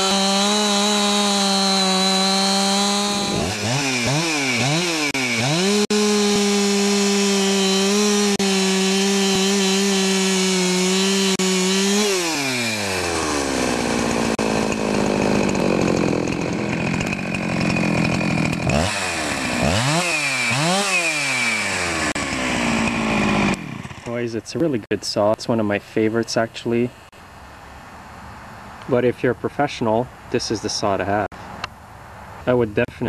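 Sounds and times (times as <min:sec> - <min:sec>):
chainsaw running at full throttle: 0:00.0 - 0:24.1.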